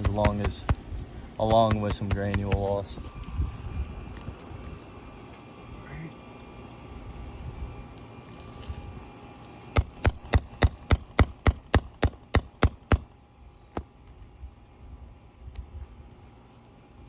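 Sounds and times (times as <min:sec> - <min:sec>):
hammer tapping metal nail puller: 0:09.8 - 0:13.0.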